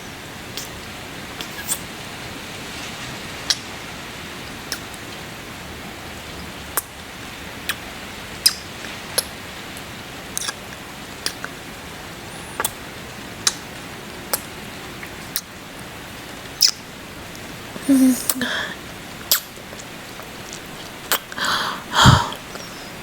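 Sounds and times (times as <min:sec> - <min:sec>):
steady rain: 0:00.0 - 0:23.0
wet lip smacks: 0:04.7 - 0:05.0, 0:10.4 - 0:10.6, 0:11.2 - 0:11.5, 0:12.4 - 0:12.8, 0:19.3 - 0:21.4
person humming: 0:17.8 - 0:18.8, 0:21.4 - 0:22.9.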